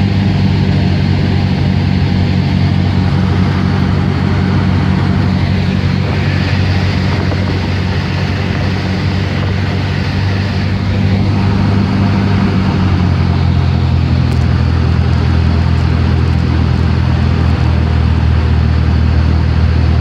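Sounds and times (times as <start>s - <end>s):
propeller plane engine droning: 0.0s - 20.0s.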